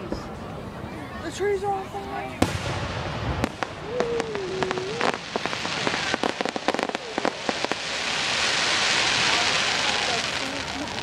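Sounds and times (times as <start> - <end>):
fireworks crackling hiss: 1.8 - 11.0
fireworks popping: 2.3 - 11.0.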